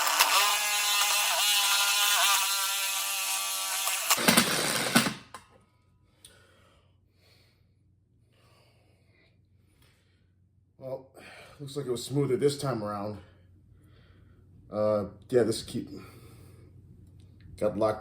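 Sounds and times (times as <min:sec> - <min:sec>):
electric drill whining: 0:00.0 - 0:05.4.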